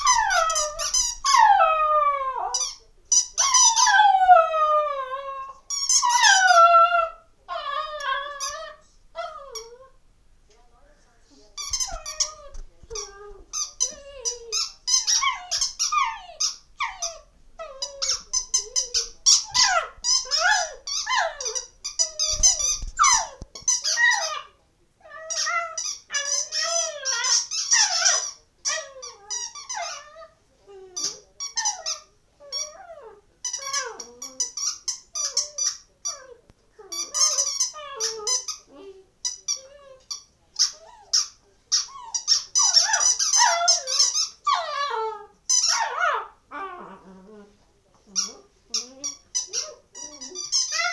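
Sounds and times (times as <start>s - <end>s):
squeaky toy squeaks: 0.0s - 1.8s, 2.4s - 4.2s, 5.7s - 6.9s, 11.6s - 24.5s, 25.1s - 30.3s, 31.0s - 46.0s, 48.1s - 50.9s
dog whining: 0.0s - 10.0s, 11.6s - 47.5s, 48.1s - 50.9s.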